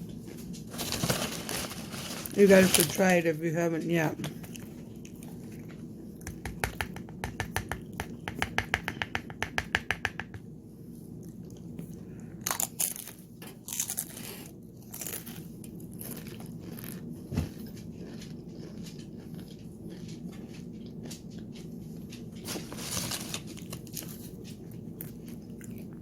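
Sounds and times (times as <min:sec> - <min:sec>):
rustling: 0:00.2 - 0:03.2, 0:22.4 - 0:24.6
chewing crunchy chips: 0:04.3 - 0:06.2, 0:11.1 - 0:26.0.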